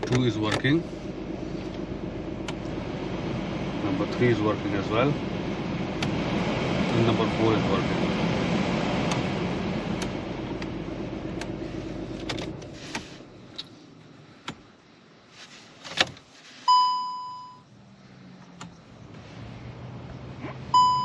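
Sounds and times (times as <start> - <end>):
heater blower fan rushing air: 0.8 - 13.4
electronic beep: 20.8 - 21.0.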